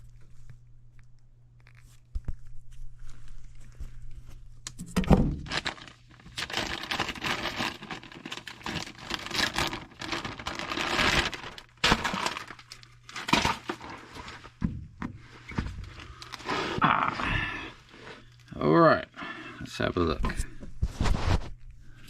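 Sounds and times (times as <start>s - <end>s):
packaging crinkling and tearing: 5.4s - 14.6s, 15.8s - 16.8s.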